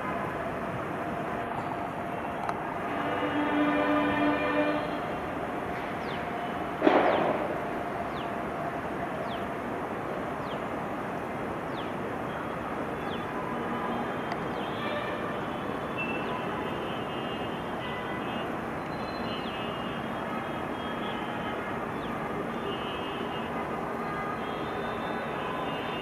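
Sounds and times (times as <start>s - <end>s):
train rolling past: 0.0s - 11.3s.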